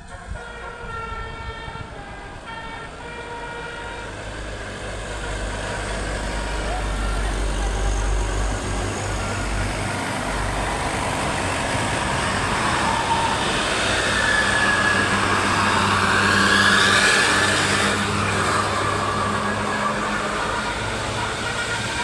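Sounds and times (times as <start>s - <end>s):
bus engine rumble: 0.0s - 22.0s.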